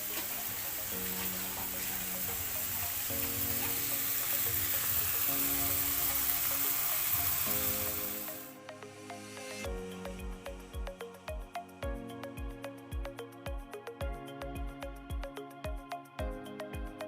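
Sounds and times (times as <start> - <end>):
food sizzling in a pan: 0.0 - 8.6
background music: 0.0 - 17.0.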